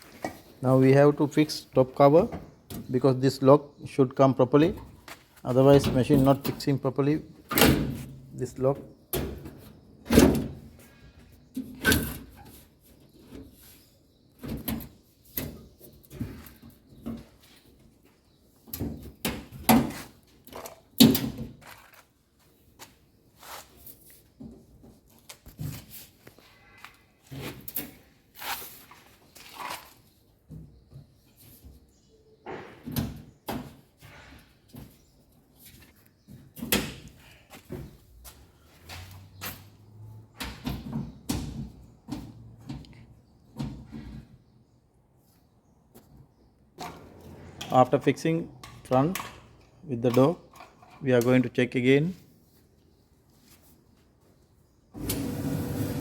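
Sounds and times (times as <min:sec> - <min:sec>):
metal panels knocking and clunking: 0:40.3 - 0:44.3.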